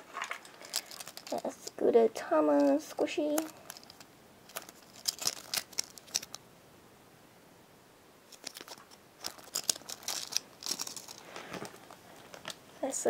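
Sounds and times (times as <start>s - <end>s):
foam squishy toy rustling and clicking: 2.6s - 6.4s, 8.3s - 12.6s.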